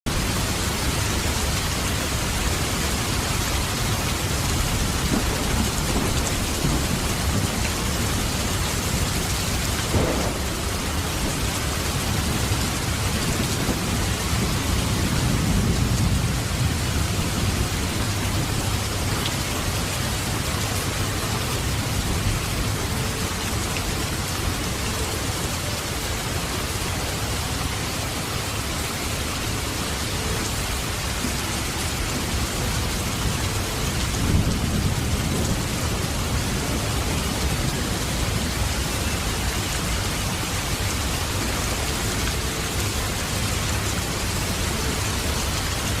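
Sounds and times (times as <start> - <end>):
thunder rumbling: 0.1 - 25.8, 31.1 - 41.4
heavy rain falling: 0.1 - 46.0.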